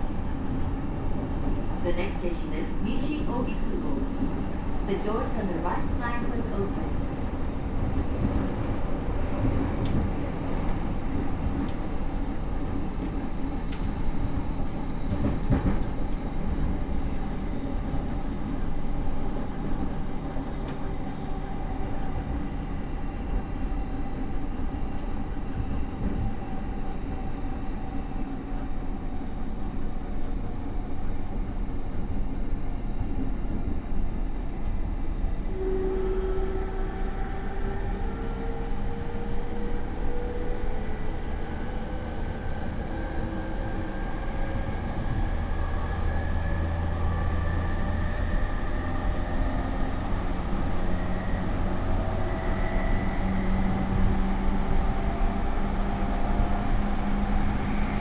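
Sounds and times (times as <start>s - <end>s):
train running rumble: 0.0s - 35.7s.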